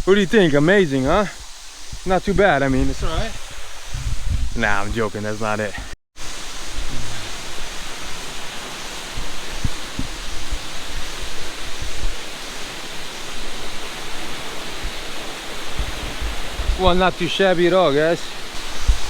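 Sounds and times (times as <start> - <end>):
waterfall rushing: 0.0 - 4.0, 4.6 - 19.0
low thumps on microphone: 2.7 - 5.0, 9.2 - 10.7, 15.7 - 17.0.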